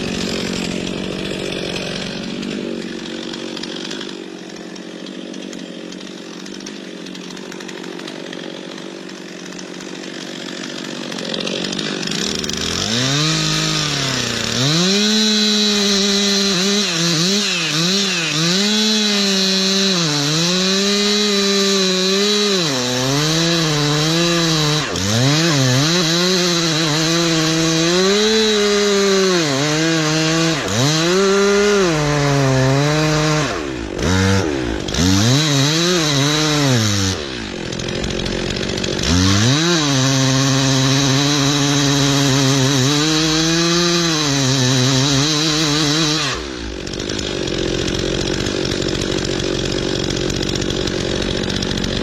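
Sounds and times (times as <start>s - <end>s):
chainsaw cutting into tree: 0.0s - 52.0s.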